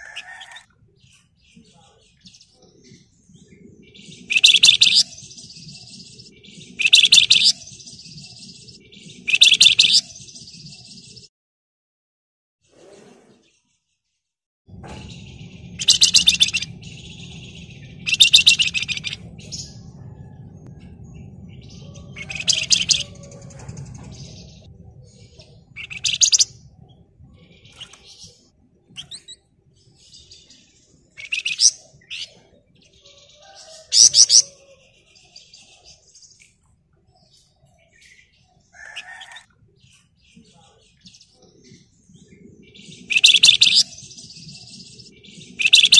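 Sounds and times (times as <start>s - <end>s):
faint bird chirps: 0.0s - 11.0s, 14.8s - 45.9s
songbird buzzy chattering trills: 1.6s - 10.5s, 14.8s - 20.1s, 21.5s - 32.6s, 38.8s - 45.9s
low hum: 14.7s - 31.2s.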